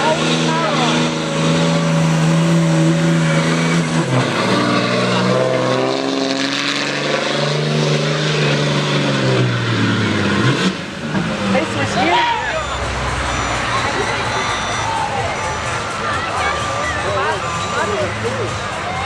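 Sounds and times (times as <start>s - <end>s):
engine at full throttle: 0.0s - 19.0s.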